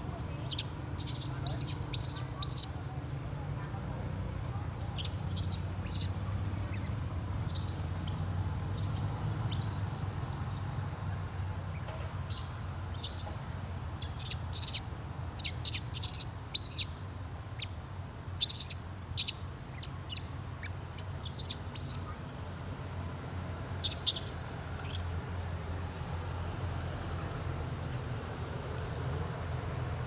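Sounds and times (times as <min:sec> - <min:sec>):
small animal chirping: 0:00.4 - 0:02.8, 0:04.9 - 0:10.8, 0:12.3 - 0:13.4, 0:14.0 - 0:14.8, 0:15.4 - 0:16.9, 0:17.6 - 0:17.8, 0:18.4 - 0:22.2, 0:23.8 - 0:25.1.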